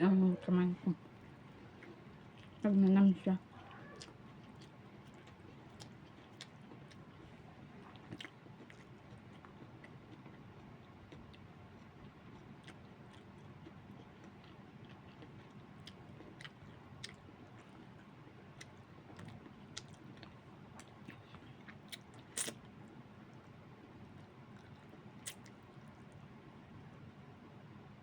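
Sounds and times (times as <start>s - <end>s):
person chewing food: 1.1s - 2.6s, 3.6s - 26.3s.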